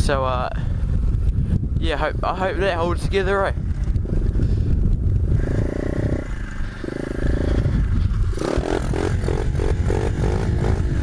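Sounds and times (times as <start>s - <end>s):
dirt bike engine revving: 3.5s - 11.0s.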